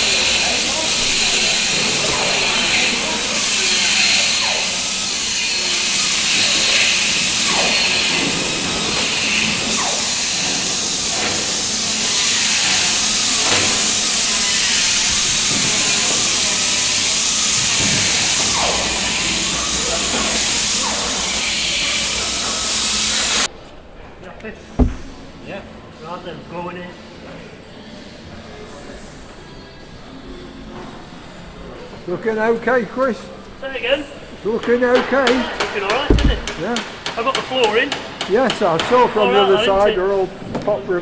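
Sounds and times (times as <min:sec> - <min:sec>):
loud workshop hiss: 0:00.0 - 0:23.5, 0:33.6 - 0:40.3.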